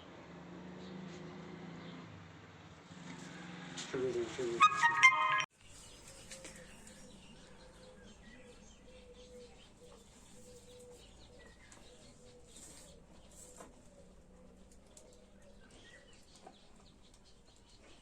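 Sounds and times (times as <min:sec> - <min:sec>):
low bird cooing: 0:06.1 - 0:16.2.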